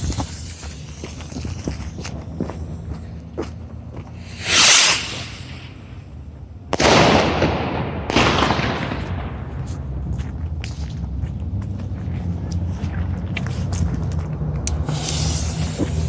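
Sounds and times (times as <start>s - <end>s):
firework rocket whoosh: 0.0s - 2.0s, 4.2s - 6.0s, 14.8s - 16.0s
firework bangs: 4.2s - 6.0s, 6.7s - 9.9s.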